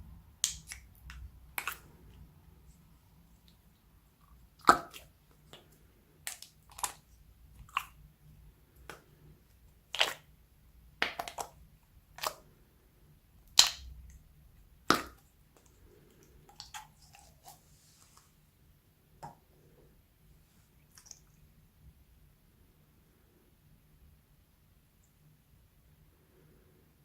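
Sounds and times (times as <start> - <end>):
slime popping and clicking: 0.4 - 1.8, 9.9 - 10.3, 11.0 - 11.6, 13.5 - 14.2, 14.8 - 15.2.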